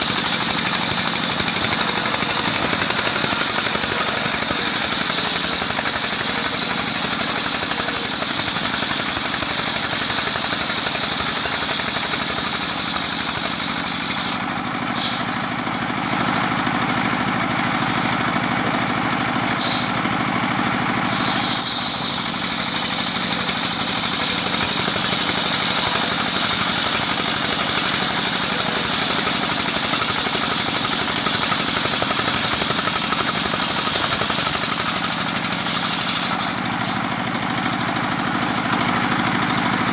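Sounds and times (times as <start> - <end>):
sawmill engine hum: 0.0 - 39.9
high-pitched saw hiss: 19.6 - 19.9, 21.0 - 37.0.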